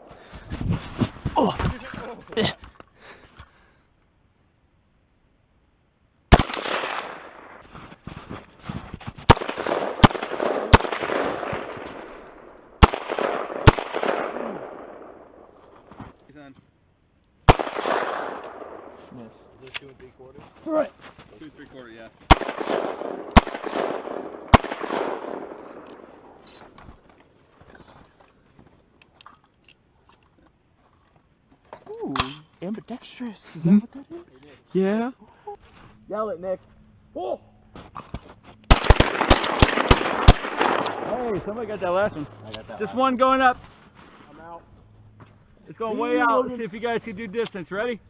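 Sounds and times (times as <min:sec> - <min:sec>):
shotgun shot echoing: 0:06.3 - 0:07.6, 0:09.3 - 0:15.9, 0:17.5 - 0:19.3, 0:22.3 - 0:26.8, 0:38.7 - 0:42.1
gunshots: 0:06.3 - 0:07.7, 0:09.2 - 0:16.0, 0:17.5 - 0:19.6, 0:22.3 - 0:26.8, 0:38.7 - 0:43.4.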